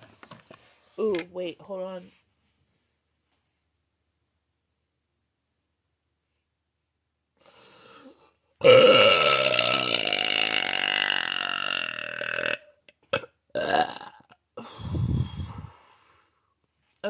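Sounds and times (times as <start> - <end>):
woman burping: 8.6 - 14.4.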